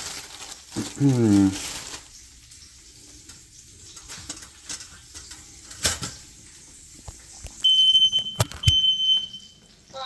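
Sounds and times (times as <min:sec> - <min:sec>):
food sizzling on a griddle: 0:00.0 - 0:07.6.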